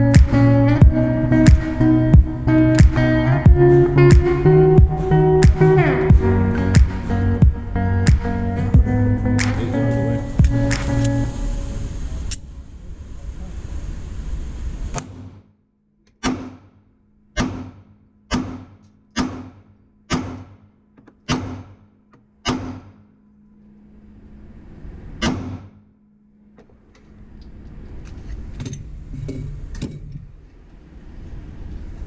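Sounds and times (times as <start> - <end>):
handgun shots: 16.2 - 16.7, 17.4 - 20.6, 22.5 - 23.0.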